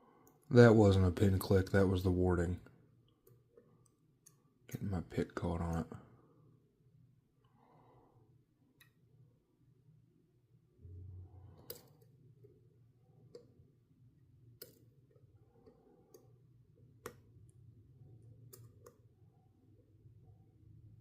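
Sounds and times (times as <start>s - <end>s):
low hum: 6.1s - 21.0s.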